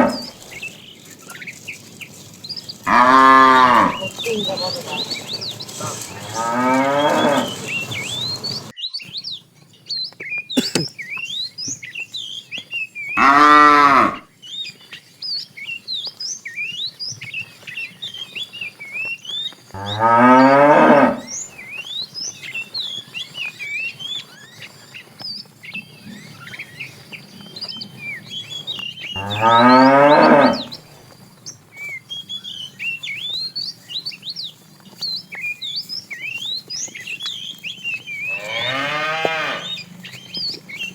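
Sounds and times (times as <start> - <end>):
cows mooing: 0.0 - 0.6, 2.8 - 8.7, 13.2 - 14.2, 19.8 - 21.4, 29.2 - 30.8, 38.2 - 40.0.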